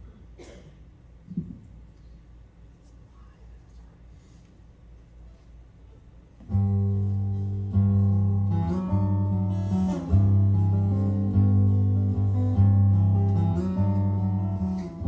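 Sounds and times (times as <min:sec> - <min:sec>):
acoustic guitar chords: 0:06.5 - 0:15.0.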